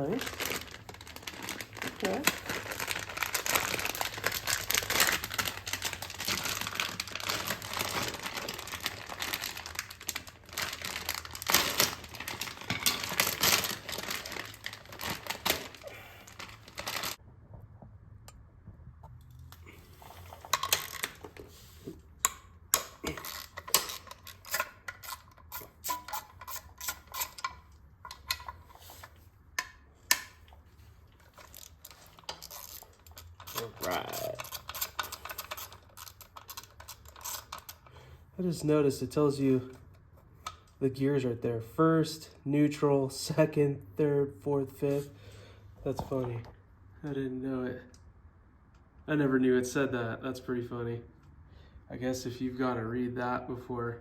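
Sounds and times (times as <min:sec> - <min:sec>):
crinkling and rustling: 0:00.0 - 0:18.0, 0:18.6 - 0:38.7
tools clicking and tapping: 0:22.2 - 0:28.7.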